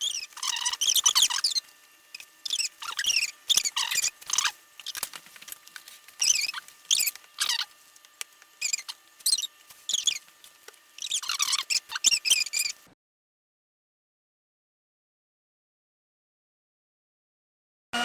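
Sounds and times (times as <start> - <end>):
spatula squeaking against bowl: 0.0 - 5.0, 6.2 - 7.8, 8.6 - 10.4, 11.0 - 12.9.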